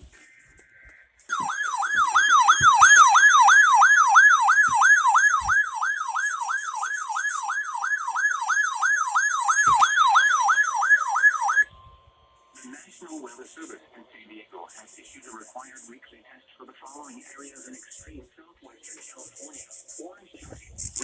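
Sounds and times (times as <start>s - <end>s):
electronic siren-like sweeping tone: 0.1s - 14.0s, 14.7s - 16.0s, 16.9s - 18.2s, 18.8s - 21.0s.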